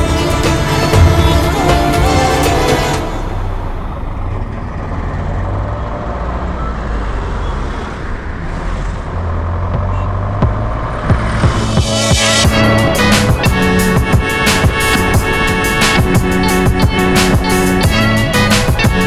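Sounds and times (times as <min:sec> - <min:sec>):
background music: 0:00.0 - 0:04.0, 0:10.4 - 0:19.0
road noise: 0:00.0 - 0:19.0
vehicle engine rumble: 0:00.0 - 0:19.0.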